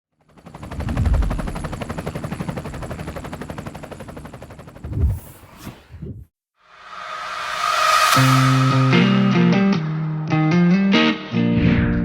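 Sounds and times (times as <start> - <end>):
helicopter rotor chopping: 0.1 - 6.2
short whoosh: 4.9 - 10.0.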